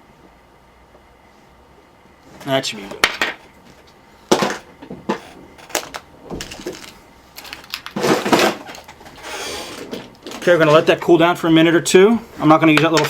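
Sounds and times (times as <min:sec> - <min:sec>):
tools handled on a workbench: 0:02.9 - 0:11.1
rustling scrape: 0:05.1 - 0:11.0.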